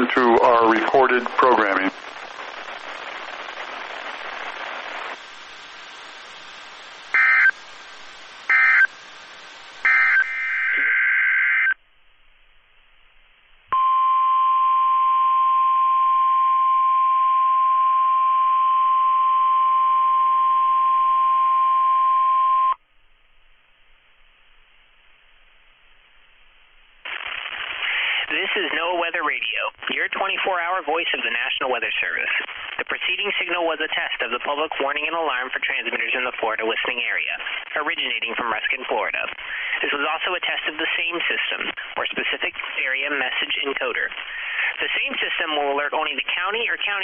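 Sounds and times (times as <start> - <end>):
radio receiver hiss: 0.0 - 13.7, 23.5 - 47.0
warbling digital data bursts: 7.1 - 7.6
steady high alarm tone: 7.2 - 7.5, 8.5 - 8.9, 9.8 - 11.8.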